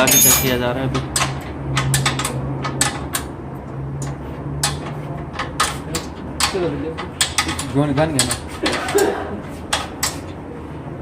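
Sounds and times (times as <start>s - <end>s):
hand tools clinking on metal: 0.0s - 0.7s.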